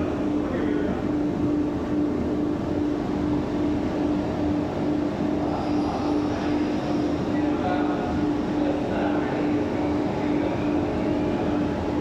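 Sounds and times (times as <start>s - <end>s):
machine running: 0.0s - 12.0s
pulsing low humming tone: 0.0s - 12.0s.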